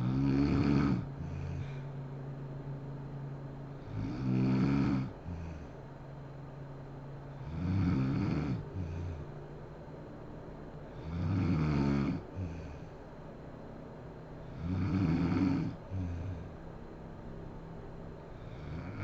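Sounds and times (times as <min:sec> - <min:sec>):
woman snoring loudly: 0:00.0 - 0:01.8, 0:03.8 - 0:05.8, 0:07.3 - 0:09.2, 0:10.9 - 0:12.9, 0:14.5 - 0:16.5, 0:18.4 - 0:19.0
quiet low drone: 0:00.0 - 0:19.0.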